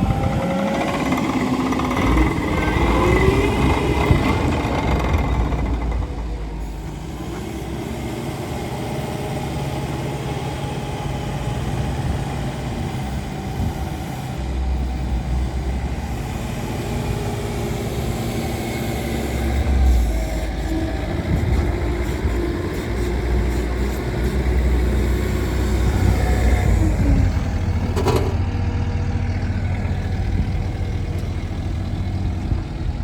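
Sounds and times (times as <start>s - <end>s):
diesel engine running: 0.0s - 33.0s
deep rumble: 25.5s - 33.0s.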